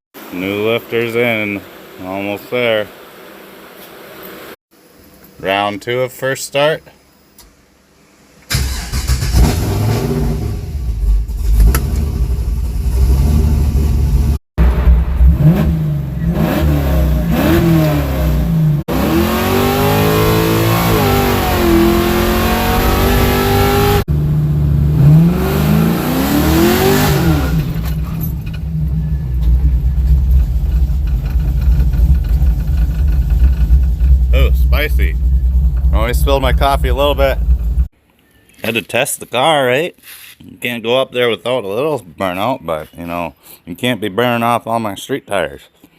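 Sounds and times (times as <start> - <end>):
car engine revving: 8.5 - 37.9.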